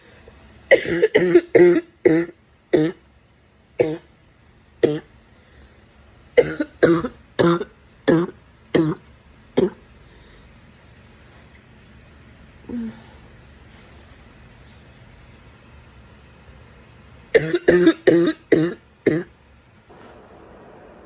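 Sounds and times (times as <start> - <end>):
girl coughing hard: 0.7 - 3.0, 3.8 - 4.1, 4.8 - 5.1, 6.4 - 9.8, 17.3 - 19.3.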